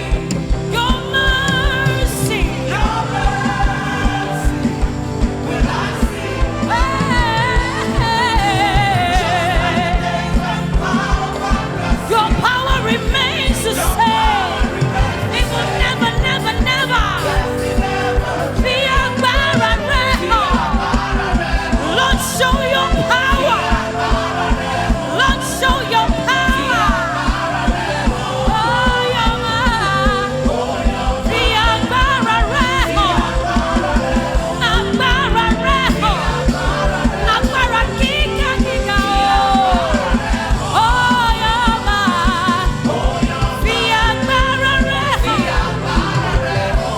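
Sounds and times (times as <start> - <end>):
band with fast beat: 0.0 - 46.9
voices singing: 0.0 - 46.9.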